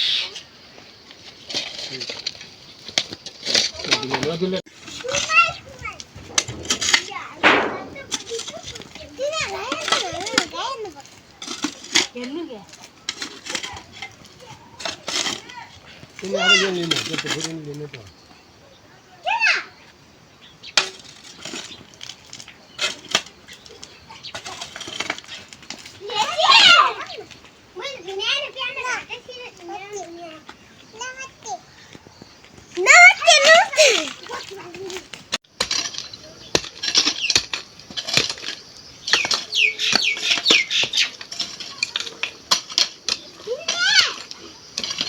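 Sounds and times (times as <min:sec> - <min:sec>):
sharp knocks and clatters: 0:03.4 - 0:10.8
bird chirping: 0:38.7 - 0:41.2.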